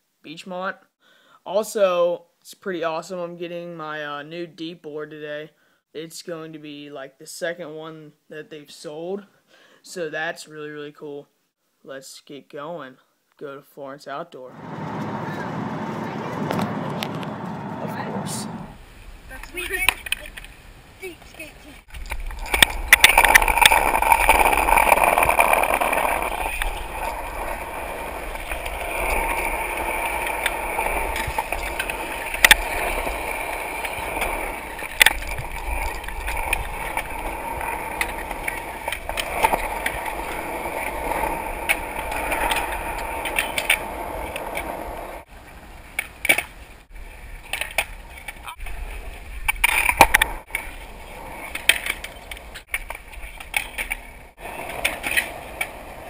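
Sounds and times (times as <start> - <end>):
skateboard wheels rolling on pavement: 14.5 - 56.0
skateboard clacking on ground: 21.9 - 45.2, 49.4 - 56.0.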